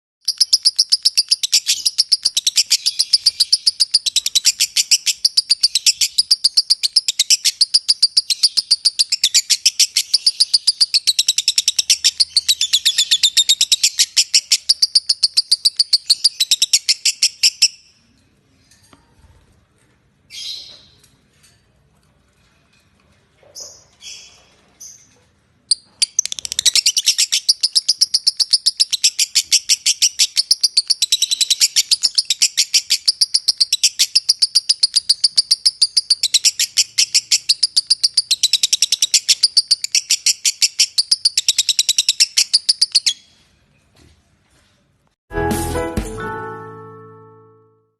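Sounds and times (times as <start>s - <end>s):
bird rapid shrill chirps: 0.2s - 17.7s, 25.8s - 43.2s.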